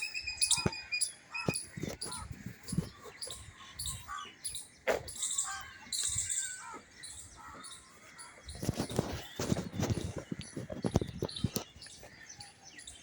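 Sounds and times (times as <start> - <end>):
small birds chirping: 0.0 - 13.0.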